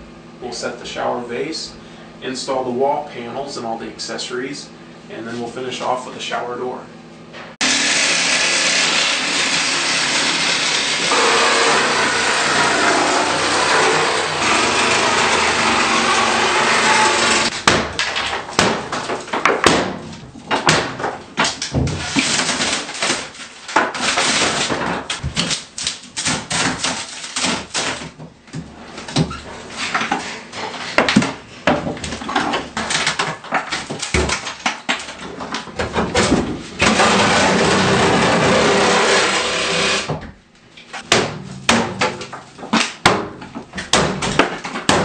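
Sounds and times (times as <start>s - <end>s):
power saw cutting: 7.6s - 17.5s, 36.9s - 40.1s
knocks cracks and bangs: 13.3s - 28.2s, 41.0s - 45.0s.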